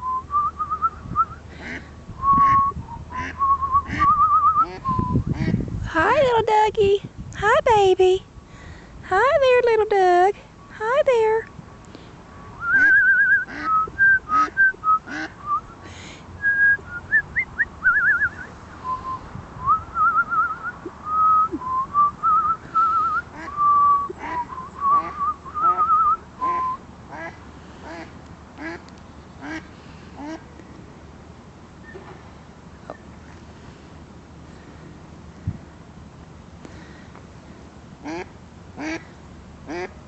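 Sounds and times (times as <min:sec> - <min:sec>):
ducks quacking: 0:01.5 - 0:01.9, 0:03.1 - 0:05.6, 0:13.5 - 0:15.4, 0:29.4 - 0:30.5, 0:39.7 - 0:40.0.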